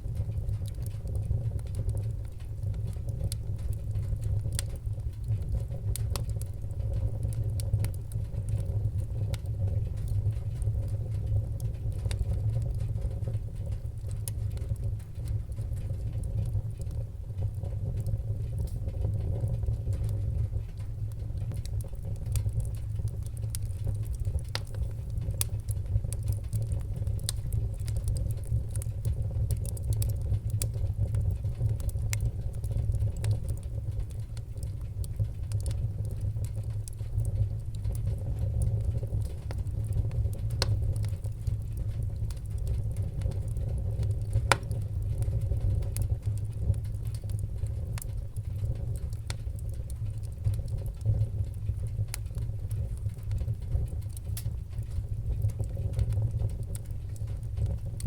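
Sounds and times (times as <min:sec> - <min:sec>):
wood fire crackling and popping: 0:00.0 - 0:58.0.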